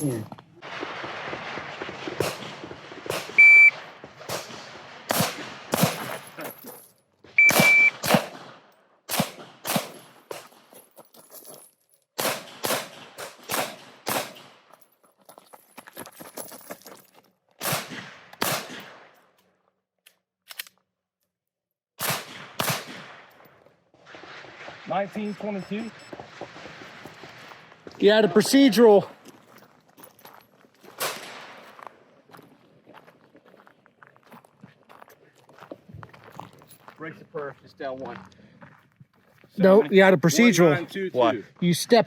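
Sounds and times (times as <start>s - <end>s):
pistol shots: 0.9s - 6.2s, 7.4s - 10.6s, 12.2s - 14.6s, 17.6s - 19.2s, 22.0s - 23.4s, 31.0s - 31.8s
shot timer beep: 3.4s - 3.8s, 7.4s - 8.0s.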